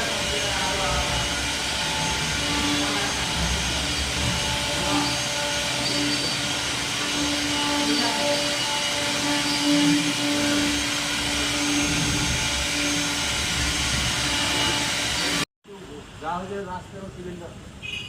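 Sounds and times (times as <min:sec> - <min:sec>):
rushing air noise: 0:00.0 - 0:15.4
wood router whine: 0:00.0 - 0:15.5.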